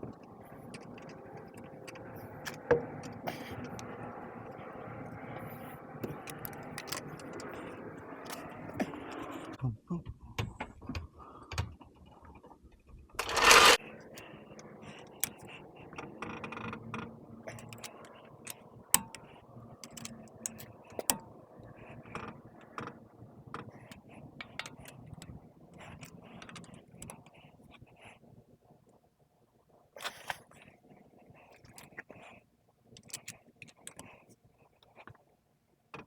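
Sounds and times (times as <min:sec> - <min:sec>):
ratchet clicking on lug nuts: 0:13.2 - 0:13.8.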